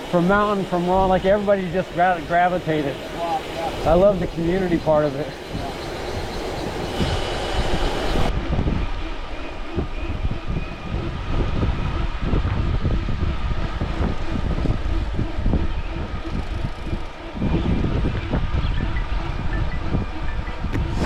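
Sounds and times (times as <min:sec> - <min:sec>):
high hiss: 0:00.0 - 0:08.3
wind rushing over microphone: 0:00.0 - 0:21.0.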